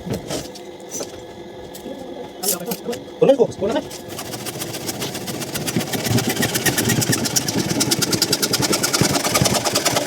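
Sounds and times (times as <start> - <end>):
small power tool rattling: 3.8 - 10.0.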